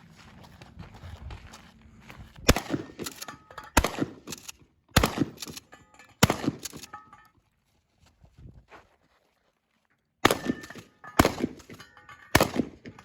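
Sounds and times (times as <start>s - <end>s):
gunshots: 2.5s - 5.6s, 6.2s - 6.9s, 10.2s - 13.0s
clicks and clatter: 2.9s - 4.6s, 5.3s - 7.3s.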